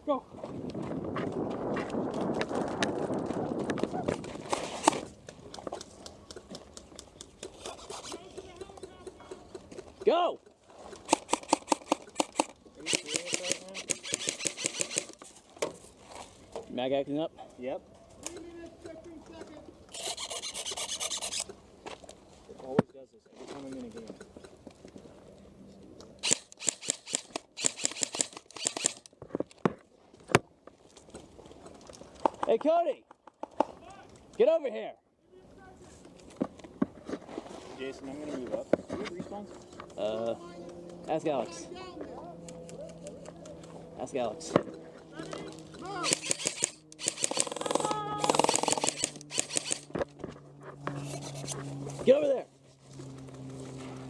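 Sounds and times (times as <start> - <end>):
hurried footsteps on dirt: 0.3 - 10.1
airsoft guns firing: 11.0 - 15.2, 46.0 - 49.9.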